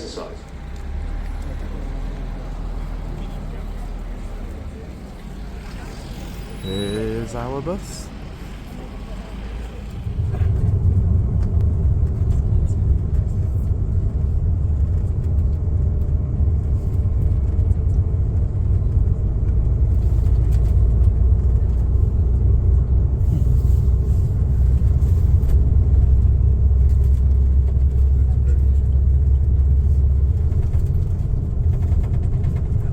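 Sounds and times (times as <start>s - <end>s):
bus engine and road noise: 0.0s - 32.9s.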